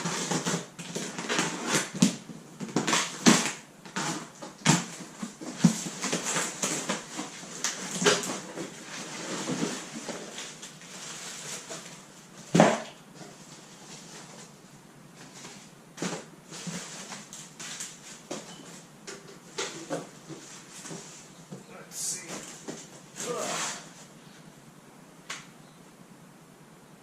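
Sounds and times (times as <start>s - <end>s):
packaging rustling and tearing: 0.0s - 12.7s.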